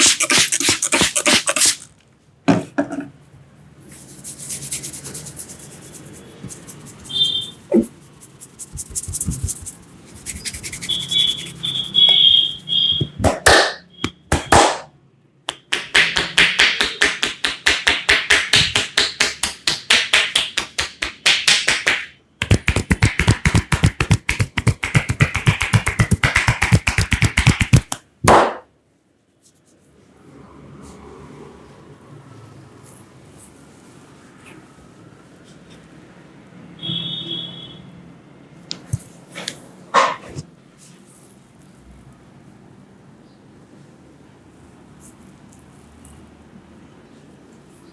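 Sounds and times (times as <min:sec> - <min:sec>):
hands slapping body: 0:13.2 - 0:14.9, 0:15.5 - 0:28.6.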